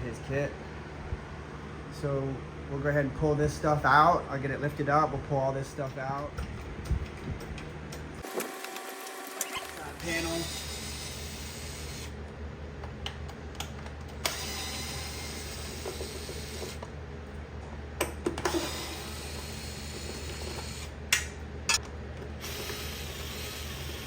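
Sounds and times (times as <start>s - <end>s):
steady low hum: 0.0s - 8.6s.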